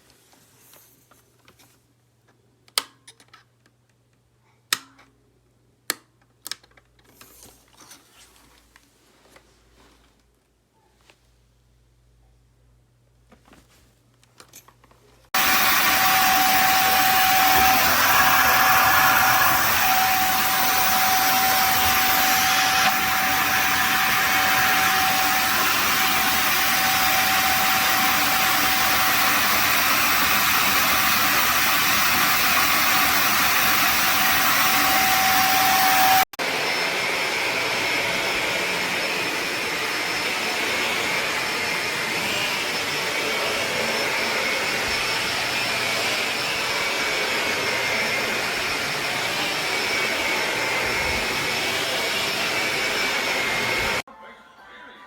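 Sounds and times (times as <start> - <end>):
high motor whine: 15.4 - 36.9
vacuum cleaner running: 15.4 - 54.1.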